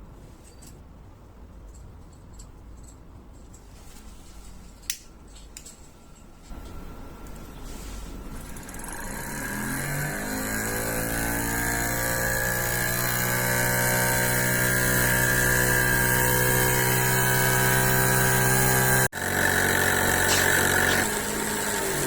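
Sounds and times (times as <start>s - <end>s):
miniature steam engine running: 8.3s - 22.0s.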